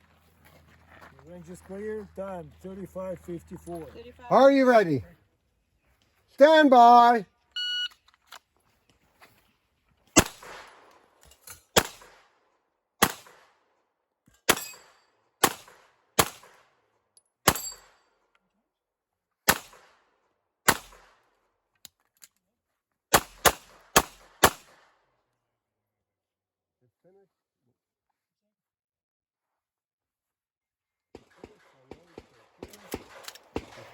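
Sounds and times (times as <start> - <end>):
pistol shots: 10.2 - 10.8, 11.8 - 12.2, 13.0 - 13.4, 14.5 - 16.6, 19.5 - 20.0, 20.7 - 21.1, 23.1 - 24.9.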